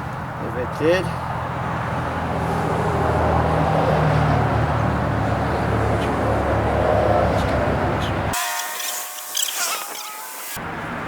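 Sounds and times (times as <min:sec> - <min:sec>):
vehicle engine approaching: 0:00.0 - 0:08.3
road and wind noise: 0:00.0 - 0:08.4, 0:09.8 - 0:11.0.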